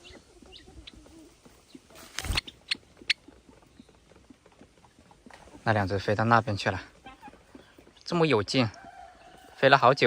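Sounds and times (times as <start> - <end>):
sparrows chirping: 0.0 - 1.0, 1.6 - 4.1.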